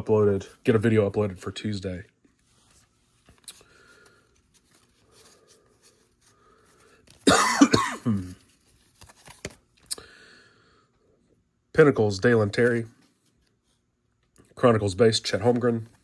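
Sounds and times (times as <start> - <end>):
faint rustles and clicks: 2.1 - 7.3, 8.3 - 9.9
man coughing: 7.2 - 8.4.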